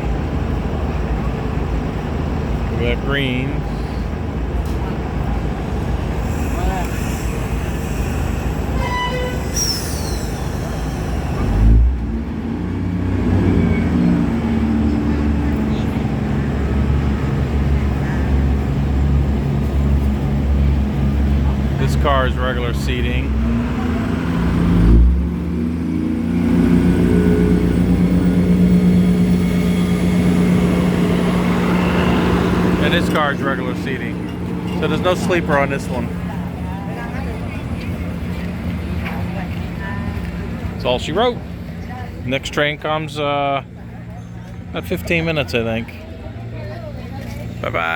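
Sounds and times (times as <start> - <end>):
diesel train engine: 0.0 - 47.9.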